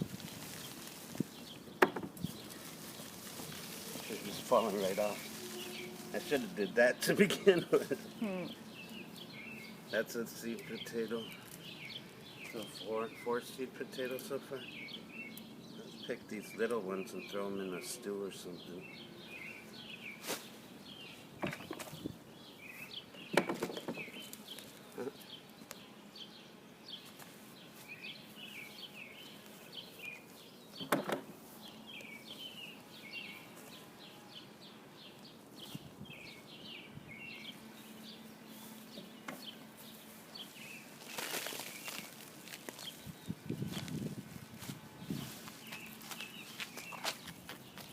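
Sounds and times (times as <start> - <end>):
hands digging through soil: 0.0 - 6.6, 39.8 - 47.9
small birds chirping: 0.0 - 47.9.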